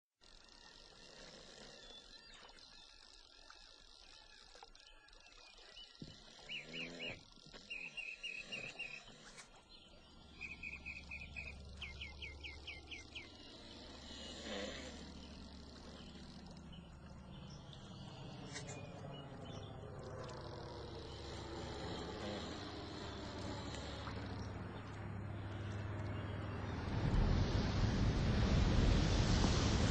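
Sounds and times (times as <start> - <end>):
faint outdoor ambience: 0.2 - 29.9
low steady hum: 0.2 - 29.9
bird chirping: 1.4 - 25.0.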